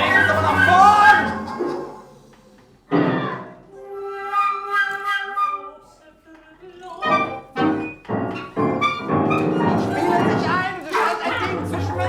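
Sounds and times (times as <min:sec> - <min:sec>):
flute-like wind instrument notes: 0:03.7 - 0:05.9.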